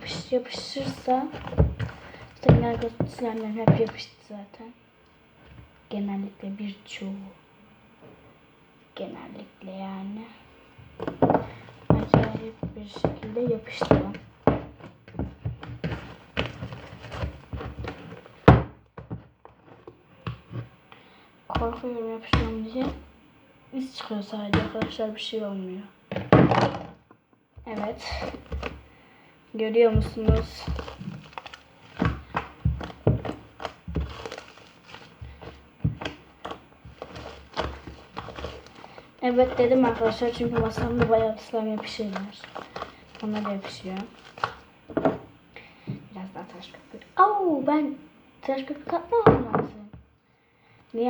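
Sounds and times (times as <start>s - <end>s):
slime thump on table: 26.1s - 26.9s
slime thunks and slaps: 26.1s - 27.0s.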